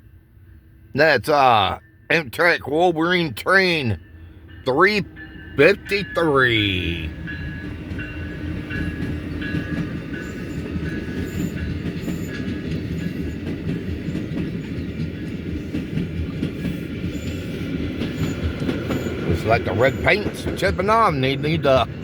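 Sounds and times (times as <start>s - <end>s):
train wheels rumbling on rails: 1.0s - 22.0s.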